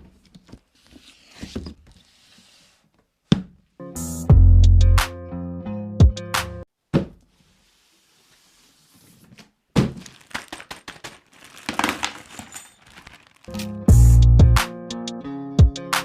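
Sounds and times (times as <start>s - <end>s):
clicks knocks and rustling: 9.8s - 13.2s.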